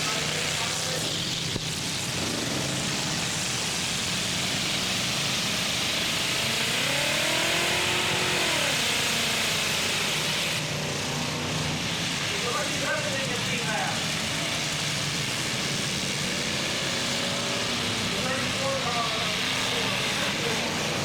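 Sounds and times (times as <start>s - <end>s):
engine revving: 0.0s - 21.0s
truck engines running loudly: 0.0s - 21.0s.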